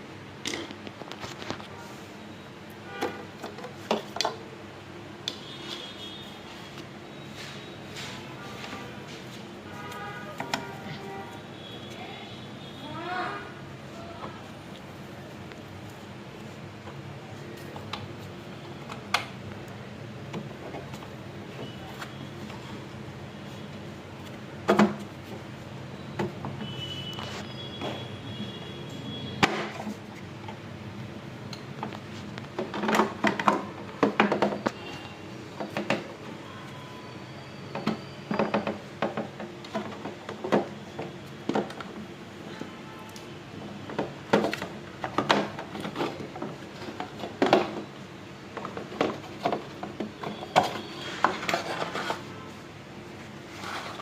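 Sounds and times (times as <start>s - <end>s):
plastic knocks and rattles: 31.8s - 34.8s, 35.6s - 36.2s, 37.8s - 41.9s, 43.8s - 47.9s, 48.5s - 51.9s.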